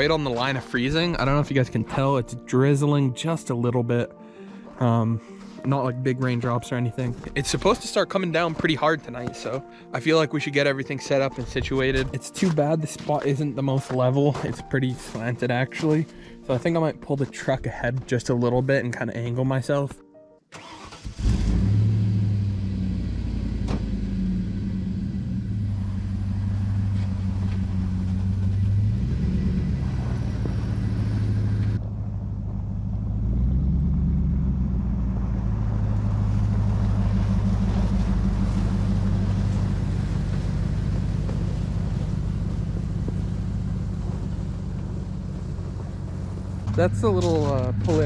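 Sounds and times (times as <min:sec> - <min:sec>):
pickup truck engine running: 0:21.2 - 0:48.0.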